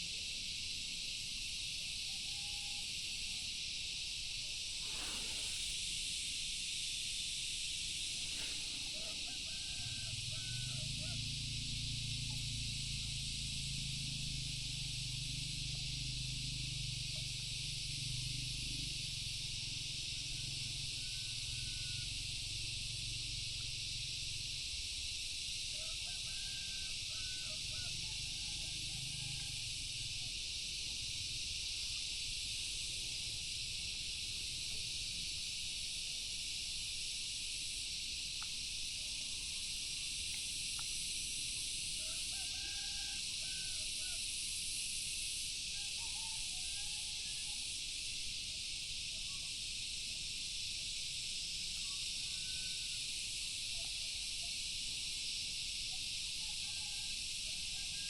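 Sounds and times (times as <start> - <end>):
high-pitched outdoor hiss: 0.0 - 58.0.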